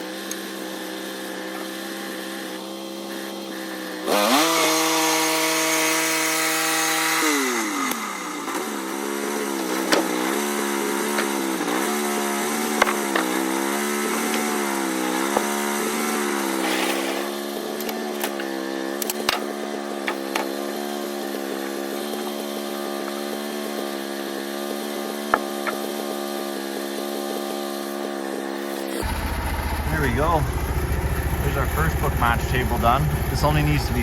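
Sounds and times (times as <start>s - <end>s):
band saw cutting wood: 0.0s - 34.0s
sawmill engine revving: 0.0s - 34.0s.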